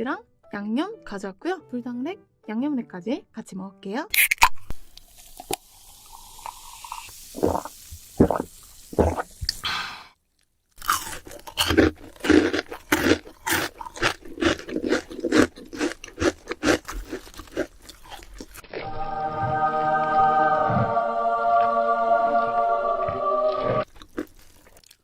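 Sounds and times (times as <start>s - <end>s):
fried chicken crunching: 10.8s - 18.9s, 23.8s - 25.0s.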